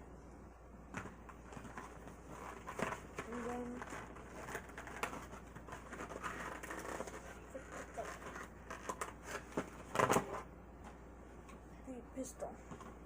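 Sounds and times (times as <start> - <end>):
plastic and cardboard crinkling: 0.9 - 10.5
packaging tearing: 2.3 - 10.4.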